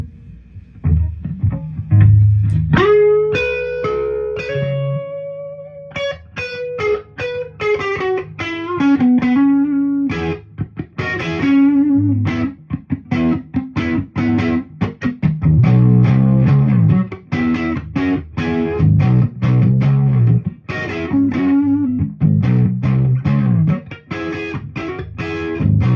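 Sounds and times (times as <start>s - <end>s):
electric guitar lead line: 0.0s - 25.9s.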